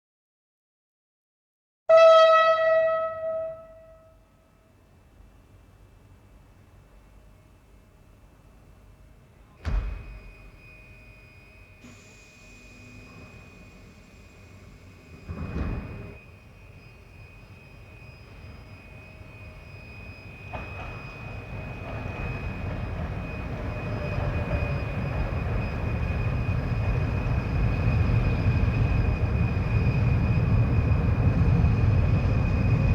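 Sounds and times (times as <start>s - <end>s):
locomotive rumble: 16.9s - 32.9s.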